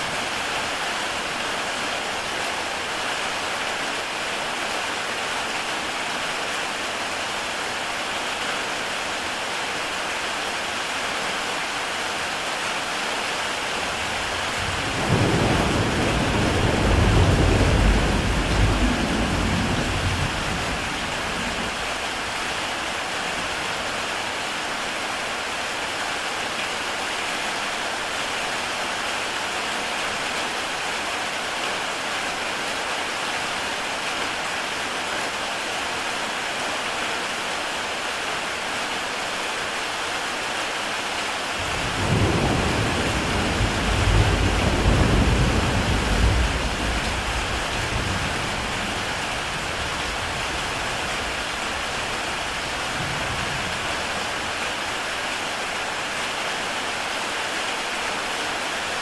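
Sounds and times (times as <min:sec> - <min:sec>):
heavy rain on a tile roof: 0:00.0 - 0:59.0
thunder rumbling: 0:13.8 - 0:22.0, 0:41.6 - 0:54.2.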